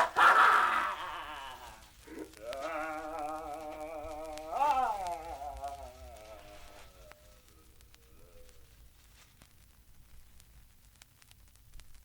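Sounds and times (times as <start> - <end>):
person screaming: 0.0 - 7.5
wavering moaning voice: 0.0 - 9.2.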